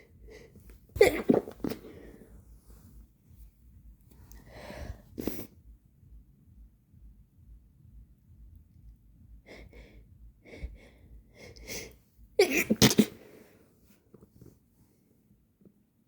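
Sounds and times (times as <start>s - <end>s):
person sneezing: 1.0s - 2.0s, 5.2s - 5.5s, 11.6s - 13.4s
catching breaths: 4.3s - 5.5s.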